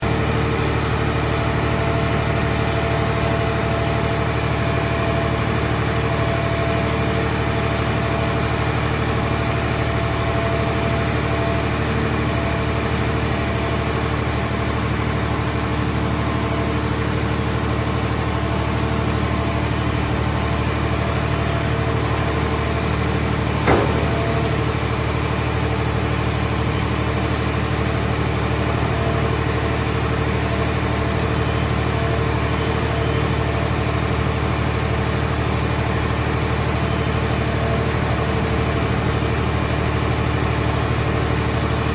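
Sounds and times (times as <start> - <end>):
baler engine drone: 0.0 - 41.9
metal clank: 23.5 - 24.9.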